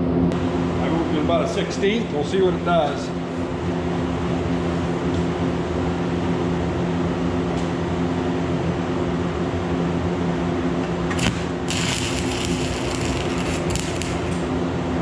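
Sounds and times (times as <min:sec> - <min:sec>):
welding rod crackling: 0:11.1 - 0:14.7
welder humming: 0:11.1 - 0:14.9.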